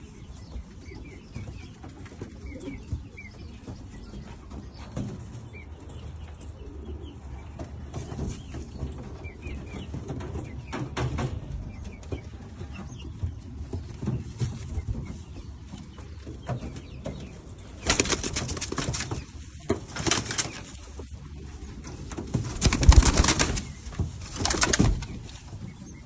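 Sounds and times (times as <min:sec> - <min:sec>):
wing flaps: 0:17.8 - 0:21.0, 0:22.1 - 0:25.4.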